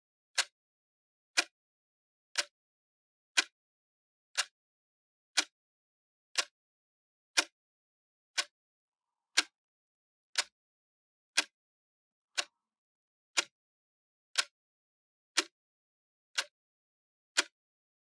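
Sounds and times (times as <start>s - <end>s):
clock ticking: 9.4s - 9.6s.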